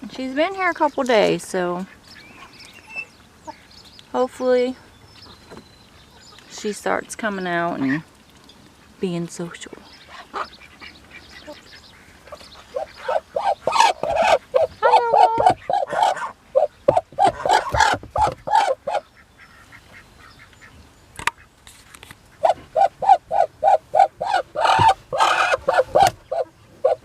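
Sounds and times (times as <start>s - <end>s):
duck quacking: 10.1s - 20.7s, 22.3s - 27.0s.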